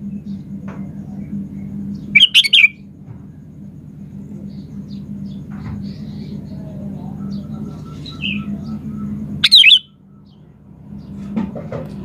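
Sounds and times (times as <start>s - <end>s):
steady low hum: 0.0s - 12.0s
bird chirping: 1.9s - 2.8s, 4.5s - 11.2s.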